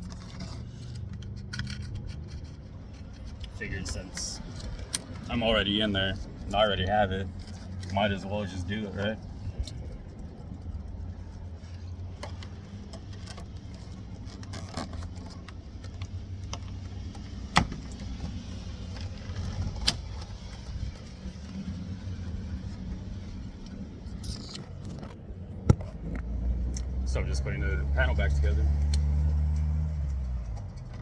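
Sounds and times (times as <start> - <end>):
parts clinking and clicking: 0.0 - 6.6
steady low rumble: 0.0 - 28.3.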